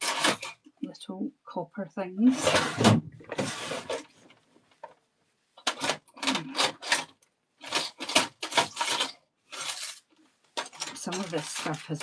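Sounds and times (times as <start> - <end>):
small metal pieces rattling: 5.7 - 10.0, 10.6 - 12.0.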